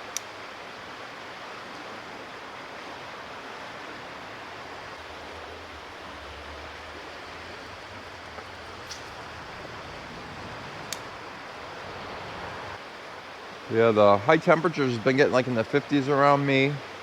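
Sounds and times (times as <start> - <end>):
creek water running: 0.0 - 17.0.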